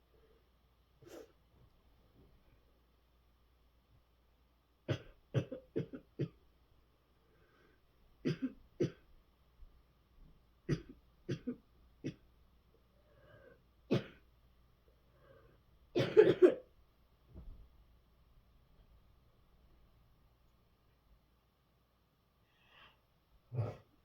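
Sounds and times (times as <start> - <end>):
hard coughing: 4.9 - 6.4, 8.2 - 9.0, 10.7 - 12.2, 13.9 - 14.3, 16.0 - 16.7
faint breaths: 7.0 - 8.1, 12.8 - 13.9, 14.9 - 15.9, 22.4 - 24.0.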